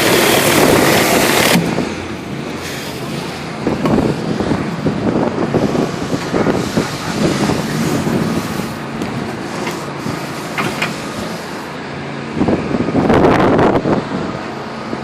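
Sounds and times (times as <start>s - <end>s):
water spray hissing on concrete: 0.0s - 4.6s, 5.4s - 11.8s
pressure washer motor drone: 0.0s - 15.0s.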